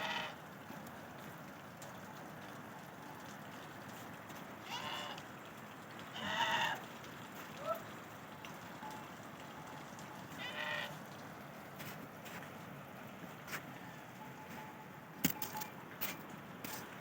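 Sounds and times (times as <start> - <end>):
sheep and goats bleating: 0.0 - 0.4, 4.7 - 5.2, 6.2 - 6.9, 10.4 - 11.0.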